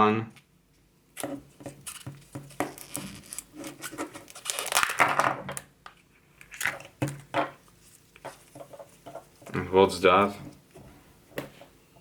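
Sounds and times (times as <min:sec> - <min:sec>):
plastic and foil packaging crinkling: 0:01.7 - 0:05.6.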